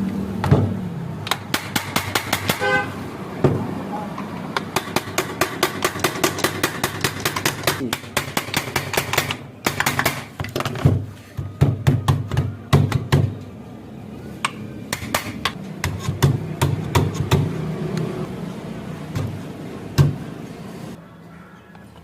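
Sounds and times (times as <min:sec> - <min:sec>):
sharp irregular knocks and taps: 0:04.2 - 0:13.3, 0:14.4 - 0:17.6.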